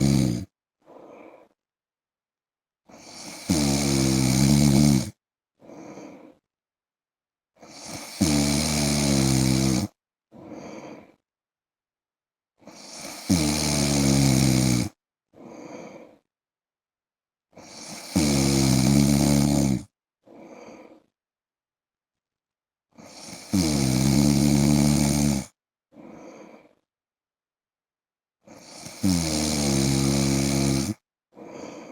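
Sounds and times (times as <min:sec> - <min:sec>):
man snoring: 0:00.0 - 0:01.6, 0:02.9 - 0:06.4, 0:07.6 - 0:11.2, 0:12.6 - 0:16.3, 0:17.6 - 0:21.1, 0:23.0 - 0:26.8, 0:28.5 - 0:31.9
soft breath: 0:00.8 - 0:01.6, 0:05.6 - 0:06.5, 0:10.3 - 0:11.3, 0:15.3 - 0:16.3, 0:20.2 - 0:21.2, 0:25.9 - 0:26.9, 0:31.3 - 0:31.9.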